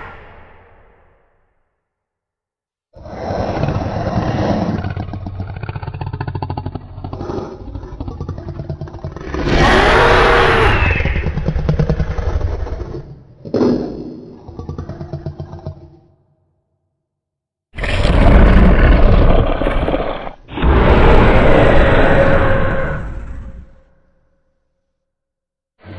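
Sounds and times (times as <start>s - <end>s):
creature roar: 3.0s - 13.0s, 17.8s - 24.0s
creature growl with rattle: 3.0s - 16.1s, 17.8s - 23.9s.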